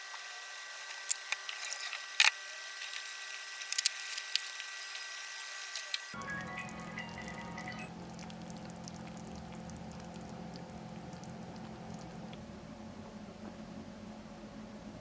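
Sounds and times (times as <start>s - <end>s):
fuller low background sound: 6.2s - 15.0s.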